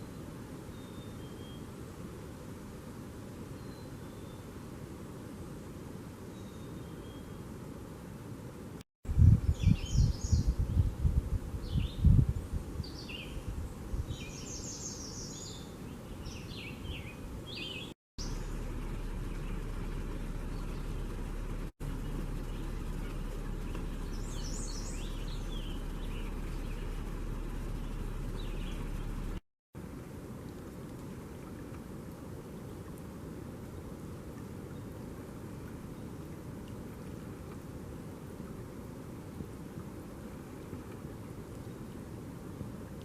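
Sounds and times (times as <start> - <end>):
wind buffeting microphone: 9.0 - 17.8
small birds chirping: 9.5 - 10.9, 12.8 - 29.4
steady low hum: 18.2 - 30.1.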